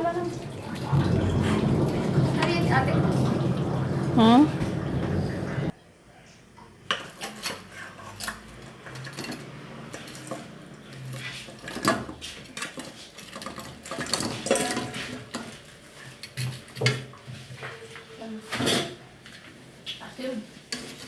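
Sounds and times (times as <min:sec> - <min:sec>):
utensils clinking against dishes: 0:07.0 - 0:19.5.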